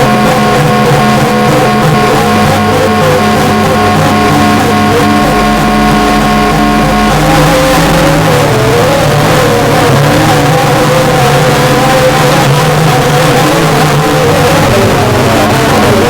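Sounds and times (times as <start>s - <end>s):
loud background music: 0.0s - 16.0s.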